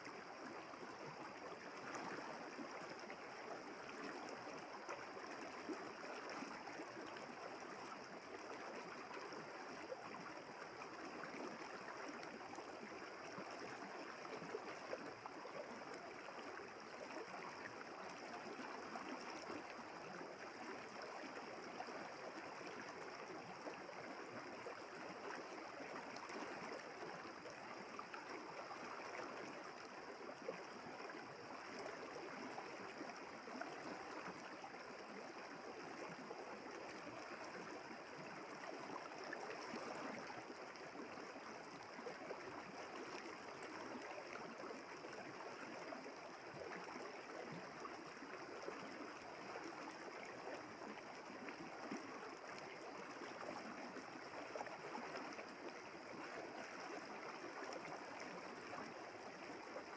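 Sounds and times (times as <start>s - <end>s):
river water flowing: 0.0s - 59.9s.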